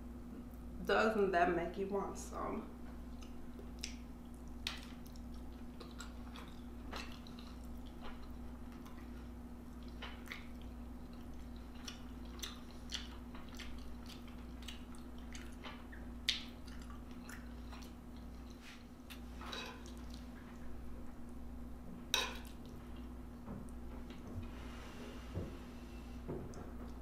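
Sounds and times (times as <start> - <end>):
person chewing food: 3.0 - 20.7.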